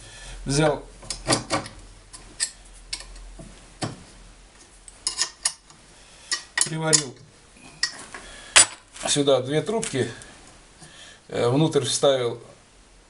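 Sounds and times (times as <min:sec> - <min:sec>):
small metal parts clinking: 0:05.0 - 0:05.7.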